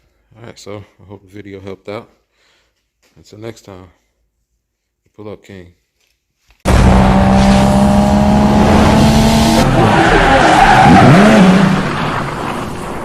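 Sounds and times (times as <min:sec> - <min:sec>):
car engine at high revs: 0:06.7 - 0:12.3
tyres squealing: 0:09.6 - 0:11.5.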